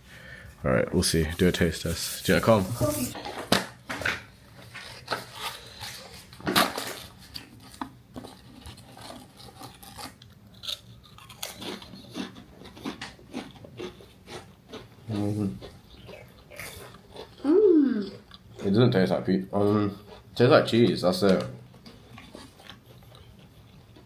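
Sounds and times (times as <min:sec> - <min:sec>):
crisps crunching: 0:04.7 - 0:17.5.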